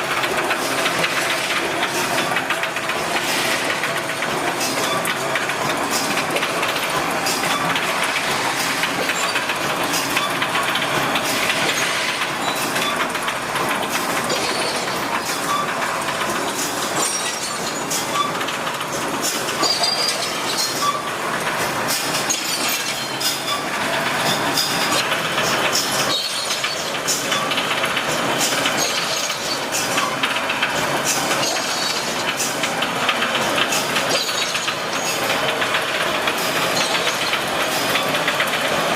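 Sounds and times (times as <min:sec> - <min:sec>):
sharp machine clicks: 0:00.0 - 0:38.9
welding machine clattering: 0:00.0 - 0:38.9.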